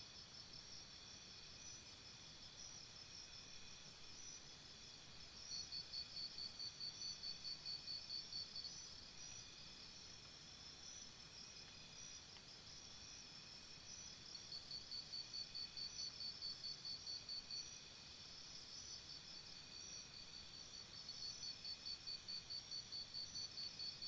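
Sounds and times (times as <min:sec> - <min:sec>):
faint insect chirping: 0:00.0 - 0:24.0.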